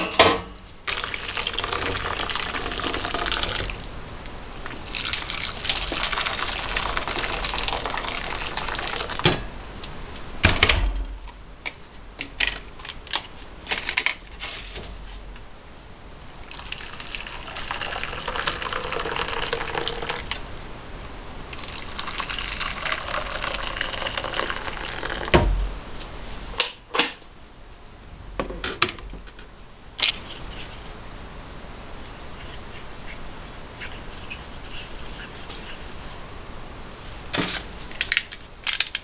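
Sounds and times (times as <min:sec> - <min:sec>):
dishes knocking and clinking: 0:00.0 - 0:00.6, 0:09.2 - 0:09.7
water running and splashing: 0:00.9 - 0:09.4, 0:16.2 - 0:20.4, 0:21.4 - 0:25.8.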